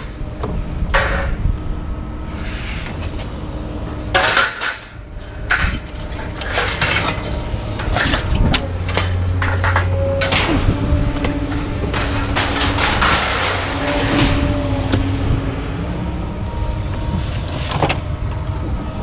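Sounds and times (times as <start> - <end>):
low mechanical hum: 0.0 - 19.0
scrap metal clanking: 2.9 - 14.6.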